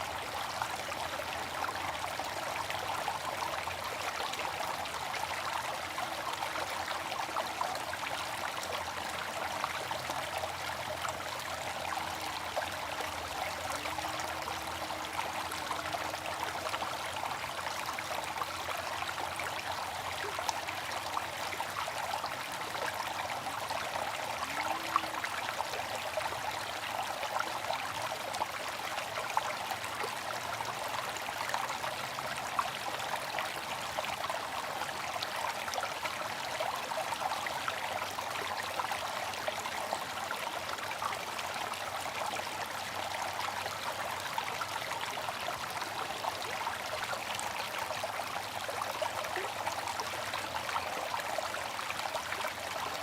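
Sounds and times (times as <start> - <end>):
fountain water trickling: 0.0 - 53.0.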